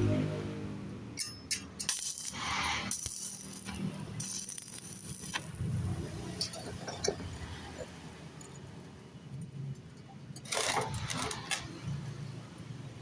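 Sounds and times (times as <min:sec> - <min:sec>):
scrape or rattle: 0:01.2 - 0:07.8, 0:10.4 - 0:12.0.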